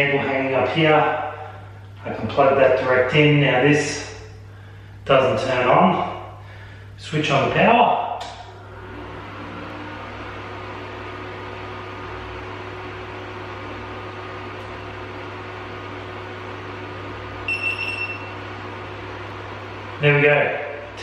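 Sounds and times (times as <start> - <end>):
high beeps: 17.5 - 18.3.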